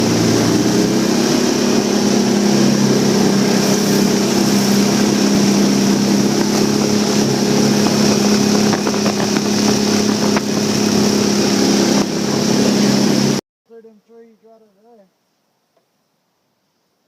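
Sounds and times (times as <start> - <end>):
boat motor running: 0.0 - 13.4
hiss of water and wind: 0.0 - 13.4.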